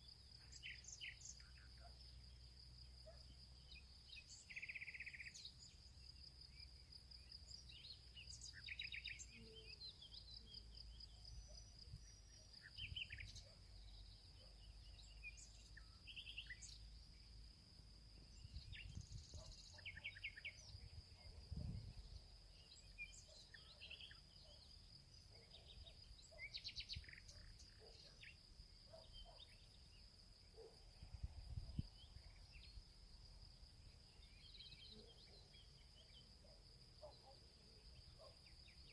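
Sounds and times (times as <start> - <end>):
forest birds calling and singing: 0.0 - 17.5, 18.1 - 30.8, 31.6 - 38.9.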